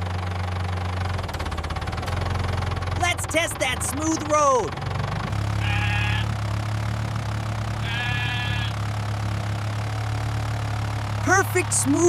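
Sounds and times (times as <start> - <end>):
tractor engine humming: 0.0 - 12.0
sheep bleating: 5.6 - 6.4, 7.7 - 8.9.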